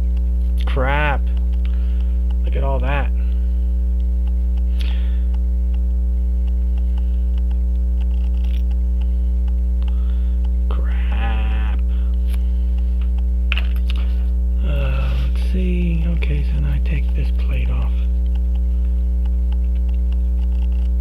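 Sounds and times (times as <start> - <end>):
electrical mains hum: 0.0 - 21.0
wavering voice: 10.7 - 12.1, 14.6 - 18.1.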